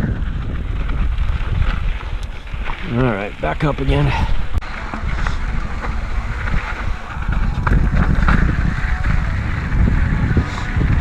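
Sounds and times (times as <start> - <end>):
rolling tyre noise: 0.0 - 11.0
wind buffeting microphone: 0.0 - 11.0
bike knocks and rattles: 4.6 - 11.0.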